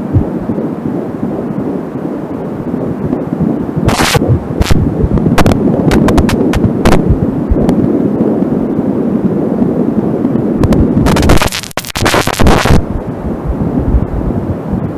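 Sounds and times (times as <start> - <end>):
static crackles: 0.0 - 13.1
fetal heartbeat whooshing: 0.1 - 0.6, 3.8 - 7.9.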